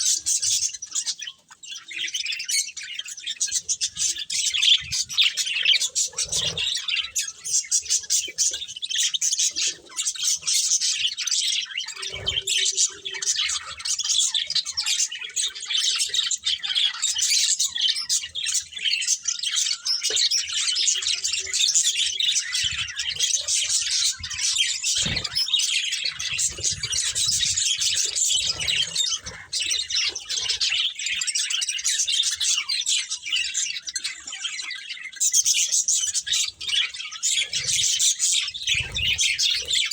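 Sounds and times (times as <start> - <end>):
budgerigars chirping: 0.0 - 39.9.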